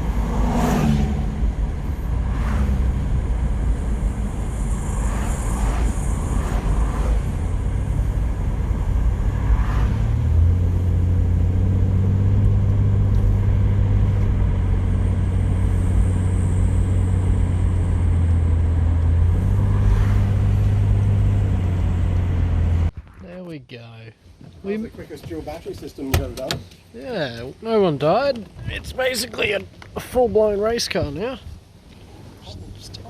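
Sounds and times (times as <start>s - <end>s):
car engine drone: 0.0s - 23.0s
road noise: 0.0s - 33.0s.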